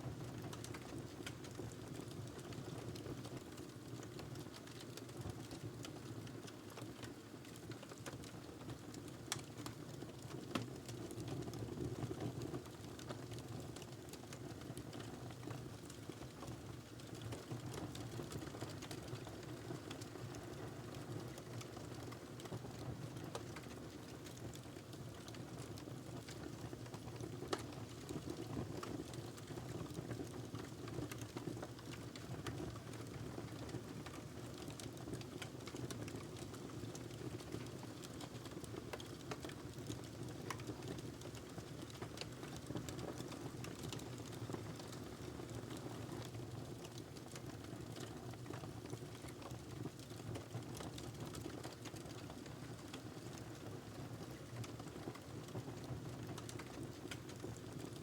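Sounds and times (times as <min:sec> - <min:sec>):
fire crackling and popping: 0:12.0 - 0:58.0.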